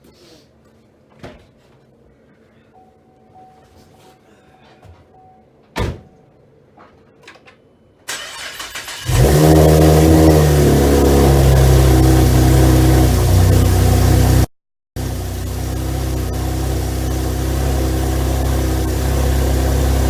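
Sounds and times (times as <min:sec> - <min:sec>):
engine starter cranking: 0:08.1 - 0:10.4
car engine fast idle: 0:08.1 - 0:20.0.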